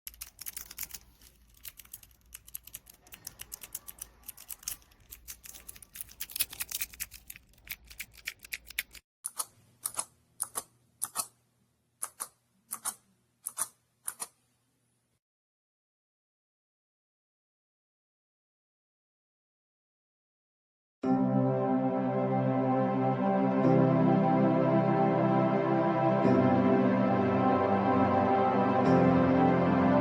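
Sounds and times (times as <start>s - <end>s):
mechanical keyboard typing: 0.1s - 11.3s.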